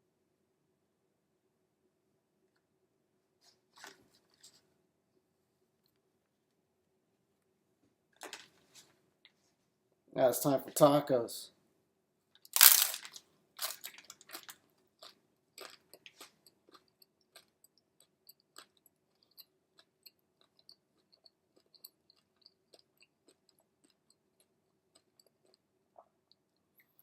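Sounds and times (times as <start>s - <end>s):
taco shell crunching: 12.4s - 25.7s
person chewing: 12.4s - 27.0s.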